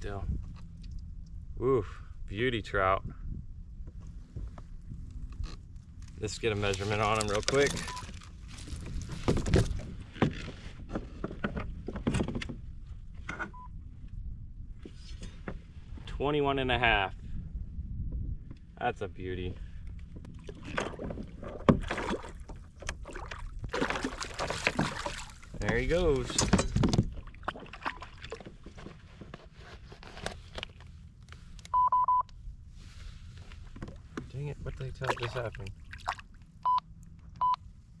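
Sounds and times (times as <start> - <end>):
knocks and scrapes of fish handling: 6.4 - 13.5, 20.2 - 30.9
short electronic beep: 31.7 - 32.3.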